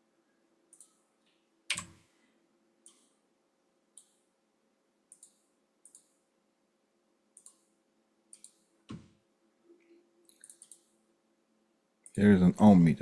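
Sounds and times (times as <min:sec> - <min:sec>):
faint clicks: 0:00.7 - 0:01.9, 0:02.8 - 0:03.2, 0:05.1 - 0:06.2, 0:07.4 - 0:07.7, 0:08.3 - 0:08.7, 0:09.8 - 0:11.0.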